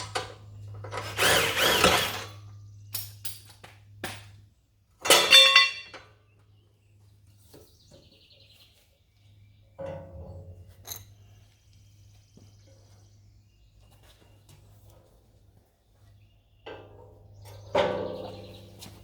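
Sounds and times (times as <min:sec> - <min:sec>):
impact driver running: 0:00.9 - 0:02.4.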